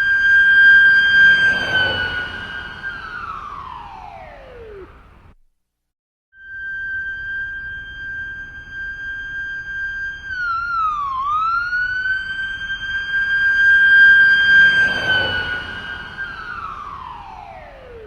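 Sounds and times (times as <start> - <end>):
ambulance siren: 0.0 - 5.3, 6.4 - 18.0.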